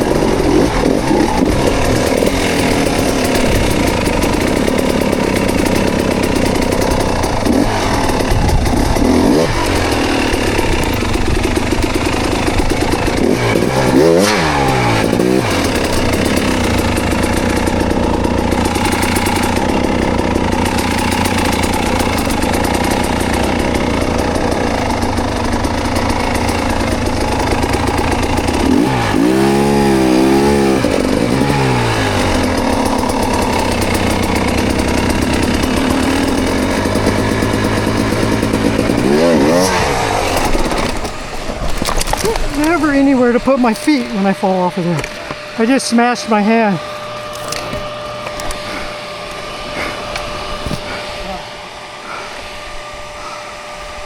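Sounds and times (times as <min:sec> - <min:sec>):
dirt bike engine revving: 0:00.0 - 0:54.0.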